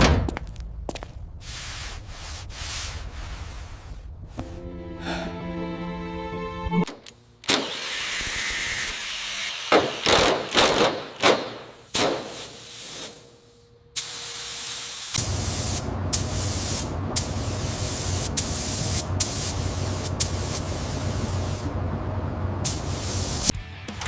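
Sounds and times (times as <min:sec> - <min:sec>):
low mechanical rumble: 0:00.0 - 0:07.5, 0:15.2 - 0:23.8
hissing spray strokes: 0:11.9 - 0:21.7, 0:22.6 - 0:23.5.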